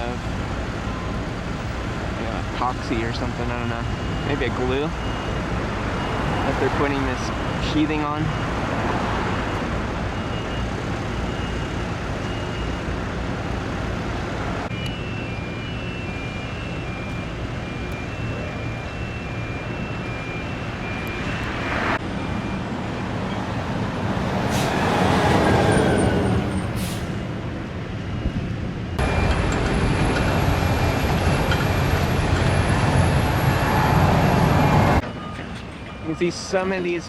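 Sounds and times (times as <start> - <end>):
road traffic noise: 0.0 - 37.0
vehicle passing: 8.4 - 9.9, 20.7 - 26.8
faint high beeps: 14.7 - 22.7.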